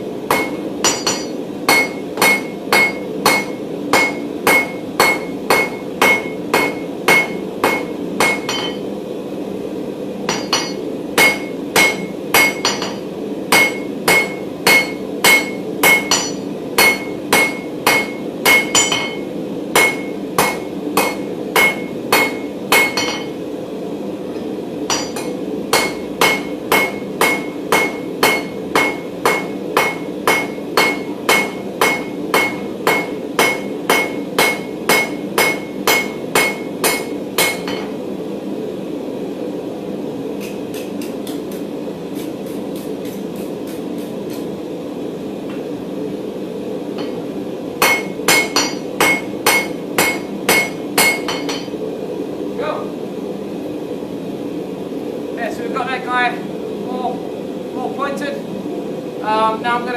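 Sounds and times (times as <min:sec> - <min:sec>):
hammer ringing on steel anvil: 0:00.3 - 0:08.8, 0:10.3 - 0:13.0, 0:13.6 - 0:19.2, 0:19.8 - 0:23.4, 0:24.9 - 0:37.9, 0:47.8 - 0:51.7.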